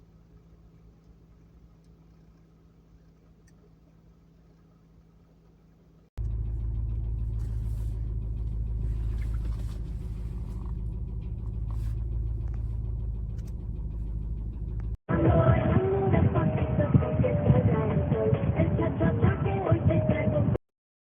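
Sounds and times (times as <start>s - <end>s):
car interior road and engine noise: 0.0s - 20.5s.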